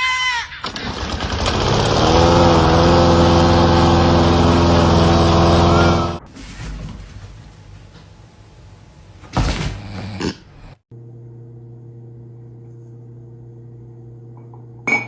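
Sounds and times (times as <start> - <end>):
engine running low hum: 1.4 - 6.3.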